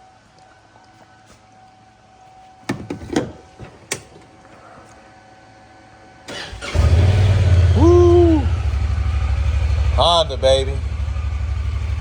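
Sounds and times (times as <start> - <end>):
knocks and clunks: 2.7 - 4.4
engine starting and rumbling: 6.2 - 12.0.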